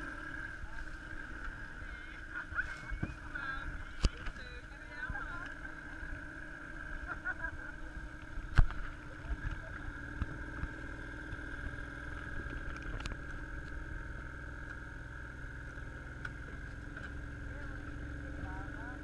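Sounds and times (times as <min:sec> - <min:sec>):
engine running steadily: 0:00.0 - 0:19.0.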